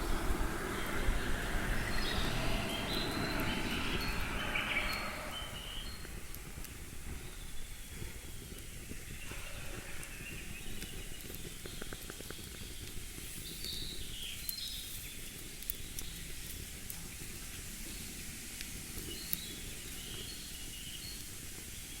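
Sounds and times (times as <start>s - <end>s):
bird chirps: 0.0s - 16.3s, 19.0s - 22.0s
steady hiss: 0.0s - 22.0s.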